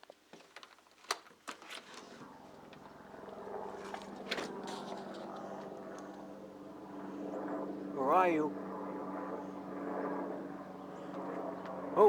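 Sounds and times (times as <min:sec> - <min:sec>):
helicopter rotor and engine: 0:02.2 - 0:12.0.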